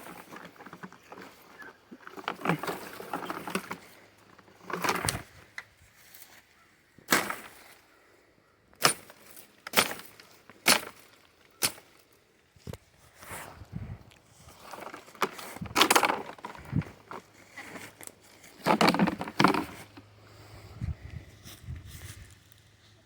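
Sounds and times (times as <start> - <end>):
brush rustling and crackling: 0.0 - 8.1, 8.9 - 23.0
sword chopping wood: 8.8 - 11.0.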